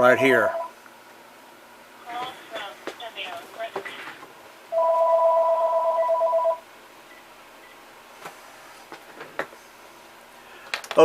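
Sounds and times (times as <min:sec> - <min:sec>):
telephone ringing: 0:04.7 - 0:06.7.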